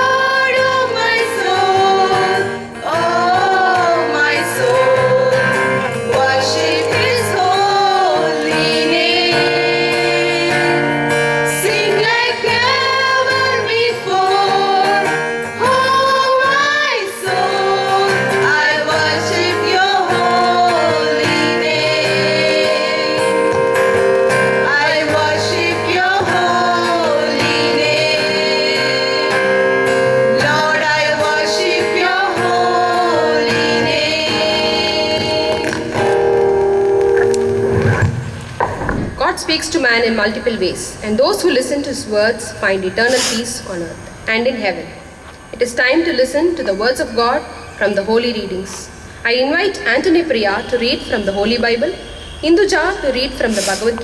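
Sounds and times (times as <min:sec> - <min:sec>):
choir of women singing: 0:00.0 - 0:35.9
guitar: 0:00.0 - 0:52.2.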